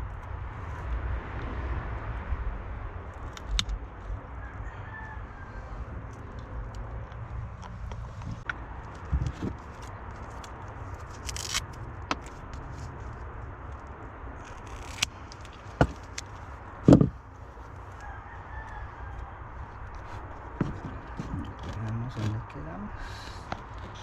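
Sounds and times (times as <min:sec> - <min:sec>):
loud thump: 0:16.9 - 0:17.2.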